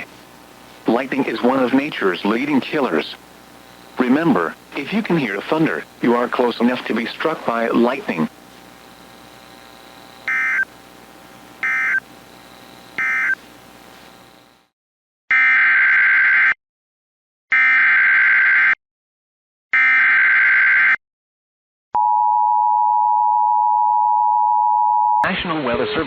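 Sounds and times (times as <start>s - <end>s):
steady attention tone: 0.0s - 14.6s
weather radio hiss: 0.0s - 14.6s
short data bursts: 10.1s - 10.8s, 11.6s - 13.4s.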